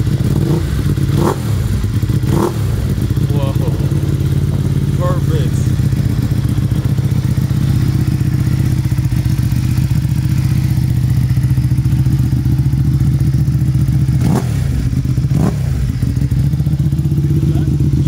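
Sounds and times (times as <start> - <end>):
motorcycle engine idling: 0.0 - 18.0.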